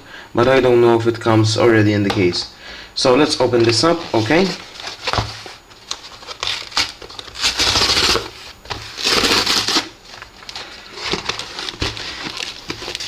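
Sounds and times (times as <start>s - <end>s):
packaging rustling and scraping: 3.5s - 13.0s.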